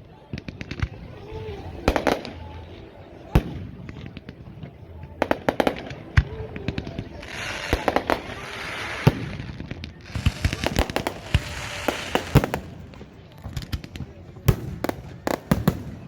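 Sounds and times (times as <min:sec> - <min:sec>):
fireworks bangs: 0:00.3 - 0:16.0
fireworks hissing crackle: 0:05.2 - 0:16.0.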